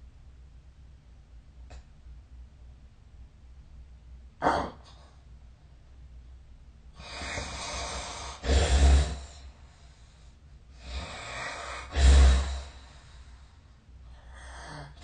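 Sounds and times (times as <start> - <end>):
person snoring: 7.0 - 9.4, 10.8 - 13.0.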